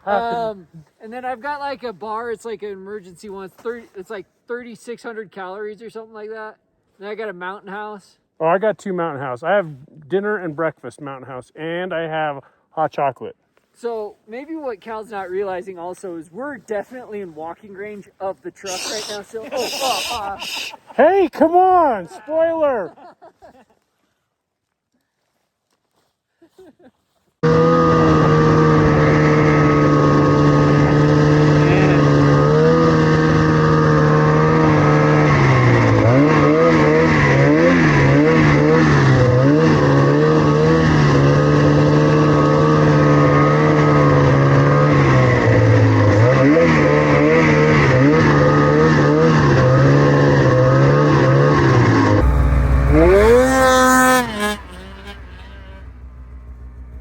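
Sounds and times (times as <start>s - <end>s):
snowmobile engine revving: 0.0s - 0.9s, 18.6s - 22.8s, 27.4s - 57.0s.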